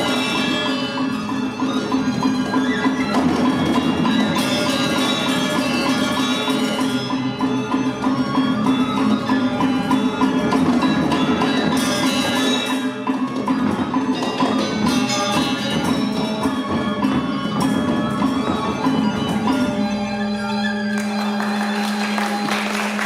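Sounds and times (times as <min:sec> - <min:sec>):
gamelan ensemble playing: 0:00.0 - 0:23.0.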